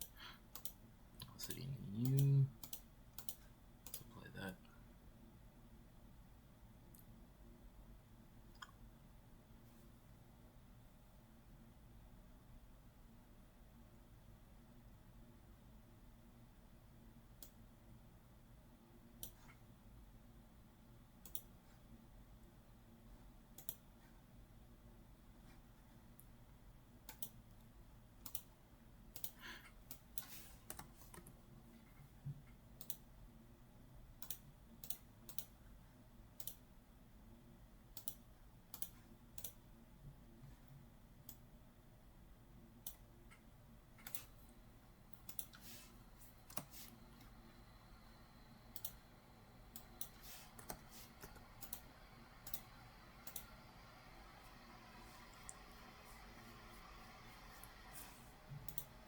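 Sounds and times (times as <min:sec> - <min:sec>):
computer mouse clicks: 0:00.0 - 0:04.1, 0:17.4 - 0:17.6, 0:19.2 - 0:19.6, 0:21.2 - 0:21.8, 0:23.6 - 0:23.9, 0:27.1 - 0:27.6, 0:28.2 - 0:28.5, 0:29.1 - 0:31.4, 0:32.5 - 0:33.1, 0:34.2 - 0:35.6, 0:36.4 - 0:36.6, 0:38.0 - 0:39.6, 0:42.8 - 0:48.1, 0:48.7 - 0:59.0
faint low hum: 0:00.0 - 0:59.0.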